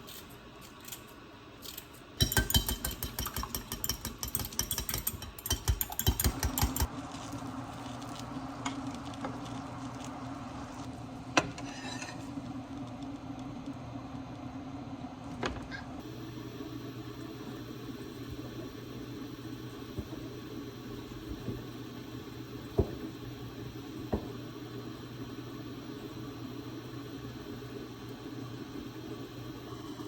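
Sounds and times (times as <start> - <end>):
steady low hum: 0.0 - 30.0
utensil clattering against cookware: 1.7 - 6.9.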